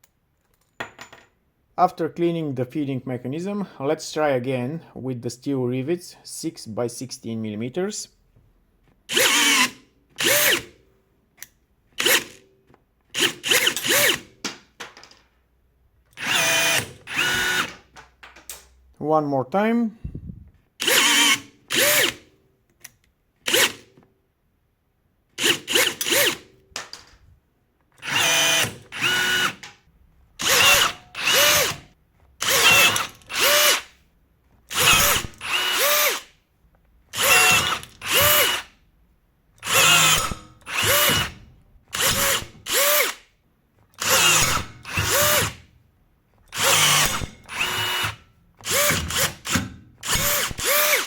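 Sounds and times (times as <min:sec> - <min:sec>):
rivet gun motor whining: 0:16.2 - 0:17.8, 0:28.0 - 0:29.7, 0:30.4 - 0:33.9, 0:34.7 - 0:36.3, 0:37.1 - 0:38.7, 0:39.6 - 0:43.2, 0:43.9 - 0:45.6, 0:46.5 - 0:51.0.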